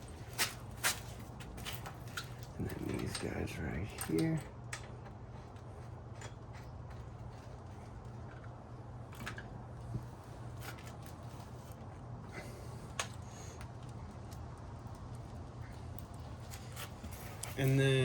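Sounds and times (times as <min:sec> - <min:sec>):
small metal parts clicking: 0:01.6 - 0:05.2.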